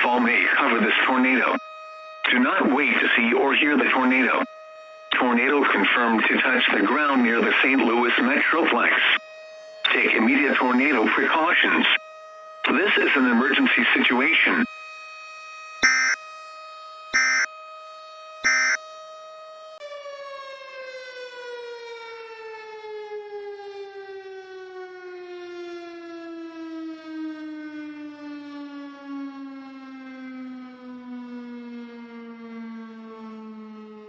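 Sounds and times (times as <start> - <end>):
tornado warning siren: 0.0 - 34.0
digital data tone bursts: 15.8 - 16.2, 17.2 - 17.5, 18.4 - 18.8.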